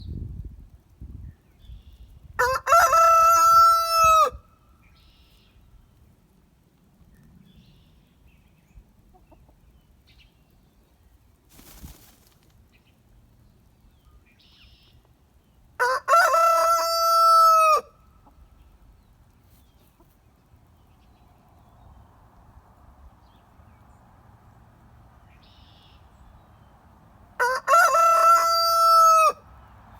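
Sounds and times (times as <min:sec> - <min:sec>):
rooster crowing: 0:02.4 - 0:04.4, 0:15.8 - 0:17.9, 0:27.4 - 0:29.4.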